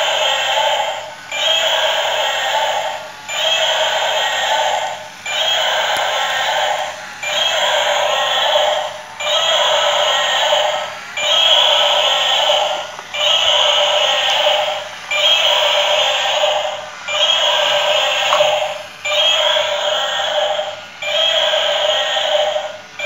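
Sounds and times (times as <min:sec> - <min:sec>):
toy dinosaur electronic sound: 0:00.0 - 0:23.0.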